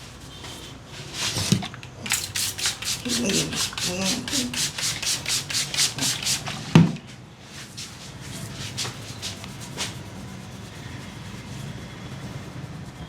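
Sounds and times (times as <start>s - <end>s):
hands rubbing through hair: 2.1s - 6.7s, 7.5s - 11.1s.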